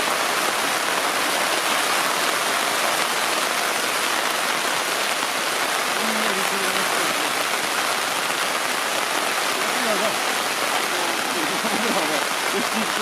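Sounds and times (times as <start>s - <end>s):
heavy rain falling: 0.0s - 13.0s.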